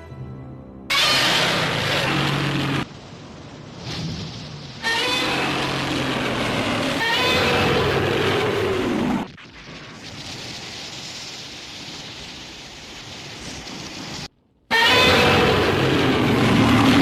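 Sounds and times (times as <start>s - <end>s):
loud monster roar: 0.9s - 2.8s, 4.9s - 9.2s, 14.8s - 17.0s
steady rain-like hiss: 2.8s - 5.0s, 9.4s - 14.3s.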